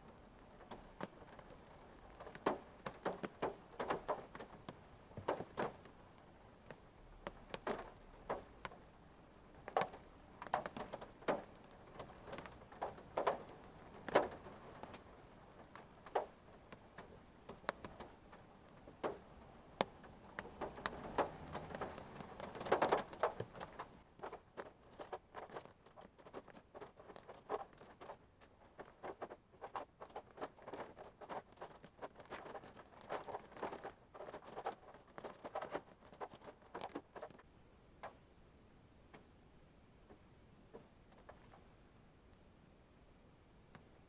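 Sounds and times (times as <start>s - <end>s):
rain pattering on car roof: 0.0s - 24.0s.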